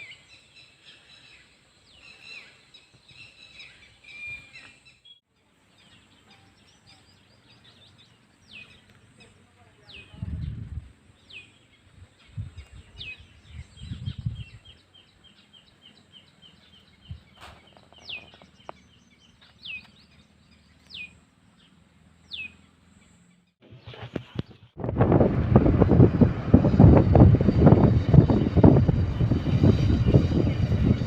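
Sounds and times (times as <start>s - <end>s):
wind thumps on microphone: 10.1s - 10.9s, 11.9s - 14.7s, 23.6s - 31.0s.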